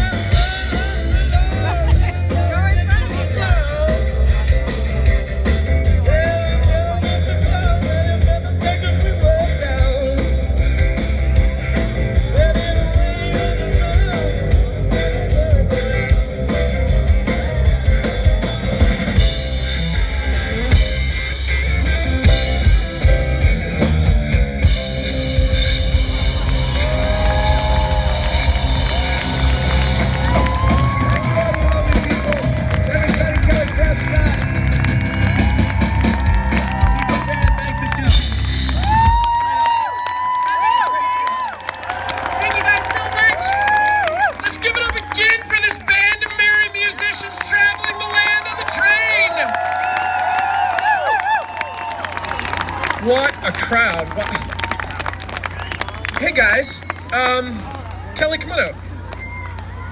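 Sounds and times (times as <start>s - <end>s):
person singing: 0.0s - 4.5s, 12.2s - 16.1s
live rock band playing: 0.0s - 59.9s.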